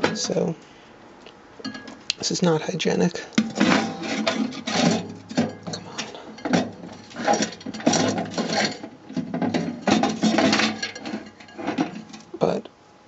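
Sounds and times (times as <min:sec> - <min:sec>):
microwave turntable clattering: 0:03.4 - 0:12.3.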